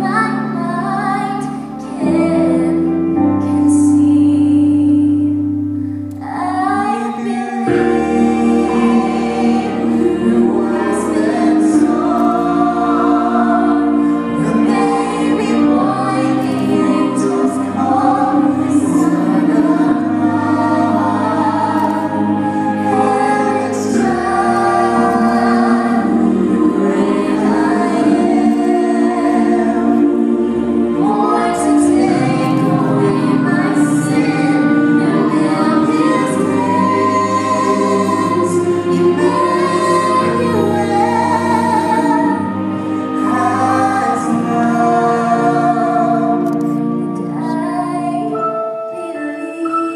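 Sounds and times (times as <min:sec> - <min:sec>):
woman singing: 0:00.0 - 0:05.5, 0:06.1 - 0:08.6, 0:31.0 - 0:49.9
sustained accompaniment: 0:00.0 - 0:49.9
voices singing along: 0:06.2 - 0:49.9.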